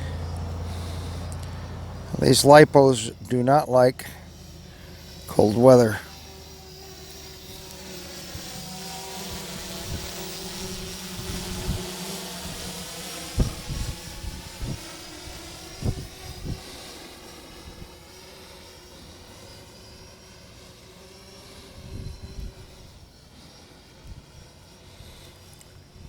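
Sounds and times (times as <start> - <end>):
drone rotors humming: 0.0 - 26.0
wind thumping on microphone: 13.4 - 14.9.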